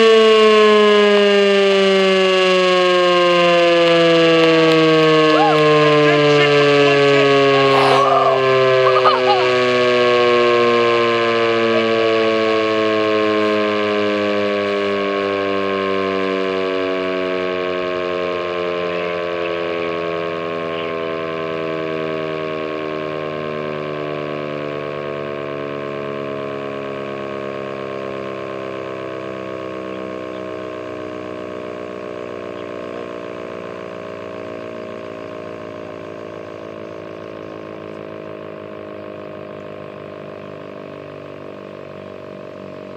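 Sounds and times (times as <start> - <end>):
warning siren winding down: 0.0 - 42.9.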